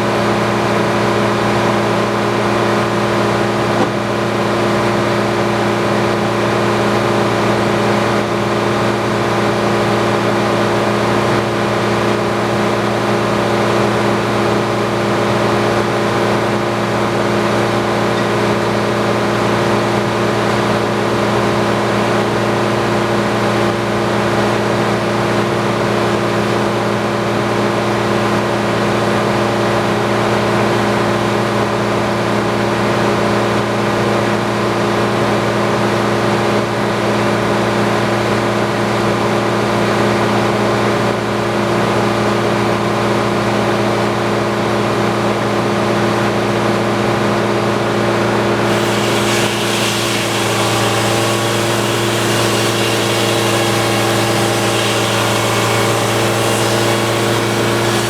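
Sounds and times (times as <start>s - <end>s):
sawmill engine droning: 0.0s - 22.6s, 46.9s - 58.0s.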